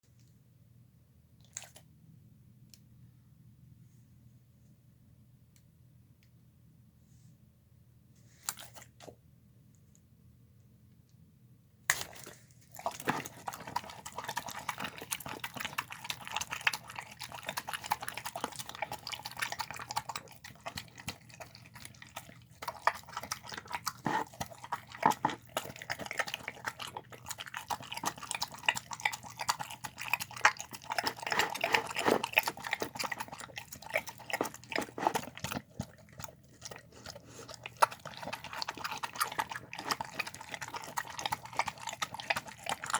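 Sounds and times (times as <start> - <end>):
dog chewing and slurping: 12.1 - 42.9.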